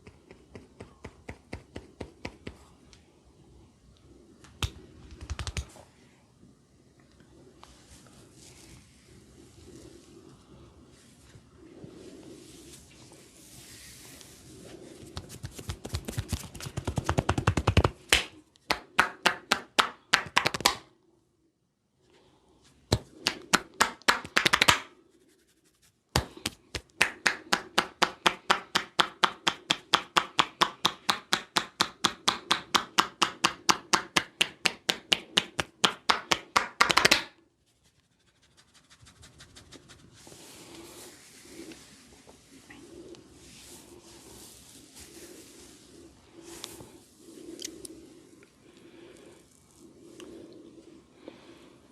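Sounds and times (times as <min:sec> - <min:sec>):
hands slapping in tapping massage: 0:00.0 - 0:02.7, 0:04.4 - 0:05.7, 0:15.1 - 0:20.9, 0:22.9 - 0:25.0, 0:26.1 - 0:37.4.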